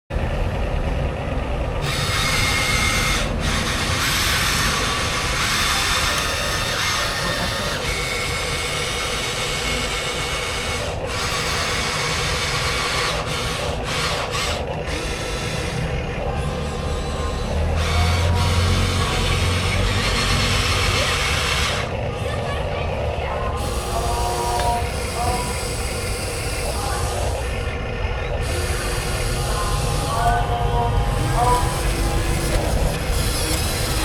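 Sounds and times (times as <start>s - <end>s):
small electric motors whirring: 1.8s - 34.0s
gritty scraping: 31.2s - 34.0s.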